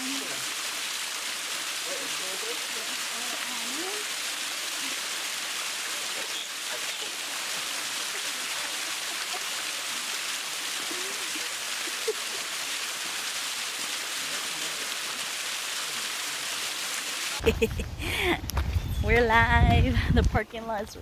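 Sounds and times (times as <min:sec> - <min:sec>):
small waterfall rushing: 0:00.0 - 0:18.3.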